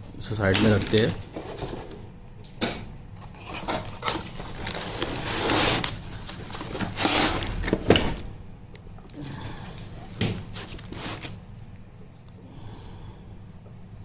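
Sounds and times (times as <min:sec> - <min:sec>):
packaging rustling: 0:03.2 - 0:08.3, 0:10.4 - 0:11.4.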